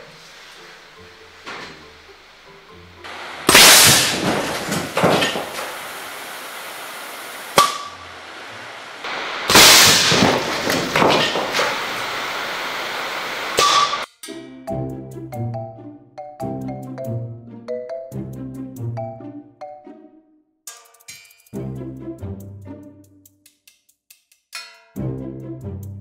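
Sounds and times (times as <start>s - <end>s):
air cannon blast and smash: 3.4s - 6.2s, 9.1s - 12.8s
debris clattering: 3.4s - 6.3s, 9.4s - 12.5s.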